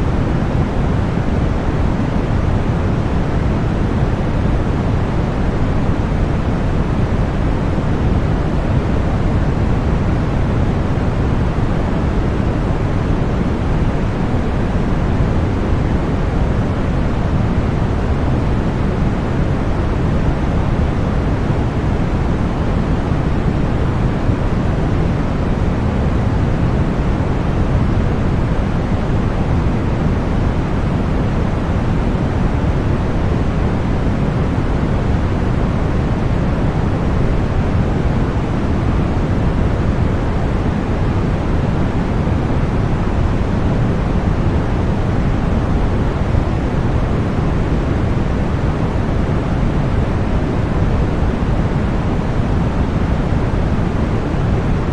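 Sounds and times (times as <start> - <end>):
deep white noise: 0.0 - 54.9.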